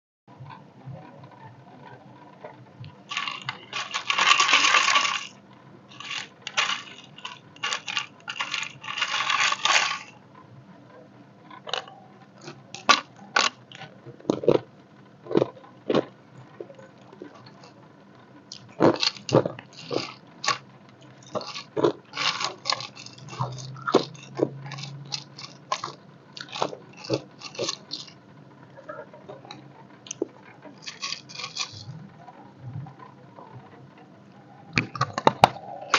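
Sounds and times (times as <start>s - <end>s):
ice cubes crunched between teeth: 3.1s - 10.1s, 18.5s - 20.6s, 21.2s - 28.1s, 30.8s - 31.9s.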